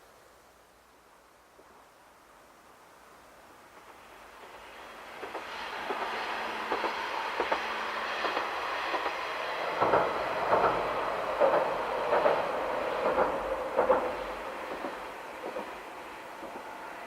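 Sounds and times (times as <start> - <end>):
diesel railcar running noise: 3.6 - 17.0
train wheels clacking over rail joints: 3.8 - 17.0.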